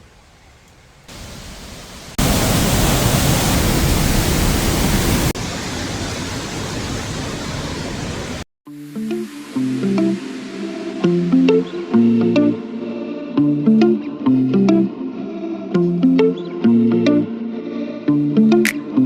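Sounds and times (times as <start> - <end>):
waterfall rushing water: 1.1 - 11.9.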